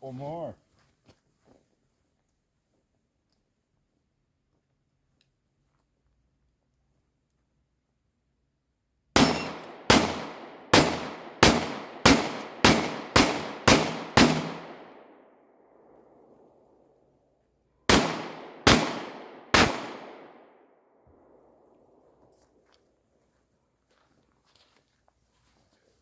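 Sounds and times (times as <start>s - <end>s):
pistol shots echoing: 9.2s - 15.4s, 17.9s - 20.6s.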